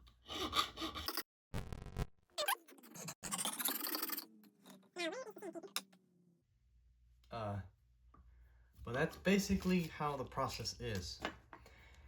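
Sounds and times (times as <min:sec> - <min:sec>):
file scraping on steel: 0:00.2 - 0:01.2.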